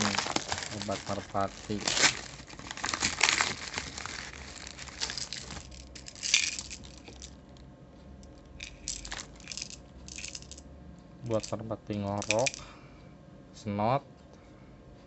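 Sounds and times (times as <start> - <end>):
packaging crinkling and rustling: 0.0 - 7.3, 8.9 - 10.5, 12.2 - 12.6.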